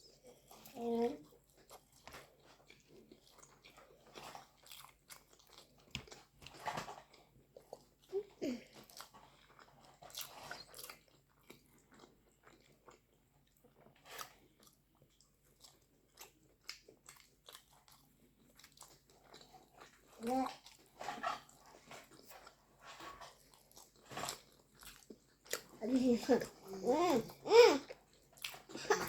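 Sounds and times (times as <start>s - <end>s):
person chewing food: 0.0s - 29.0s.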